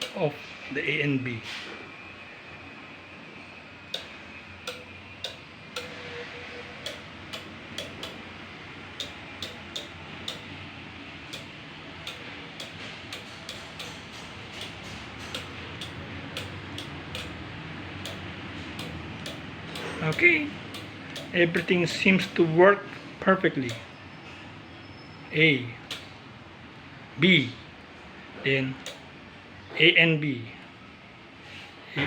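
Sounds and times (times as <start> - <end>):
relay switch clicking: 0.0 - 0.3, 3.9 - 22.5, 23.6 - 23.9, 25.9 - 26.1, 28.8 - 29.1.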